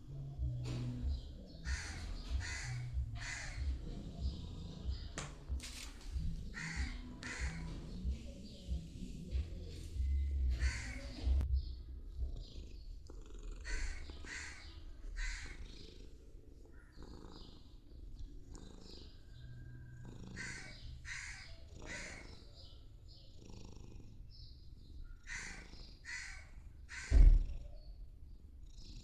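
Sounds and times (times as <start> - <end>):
cat purring: 0.0 - 26.8, 27.4 - 29.0
crows cawing: 1.6 - 5.1, 6.4 - 8.1, 10.5 - 11.4, 13.6 - 15.8, 20.4 - 22.4, 25.2 - 27.3
loud thump: 27.1 - 27.6.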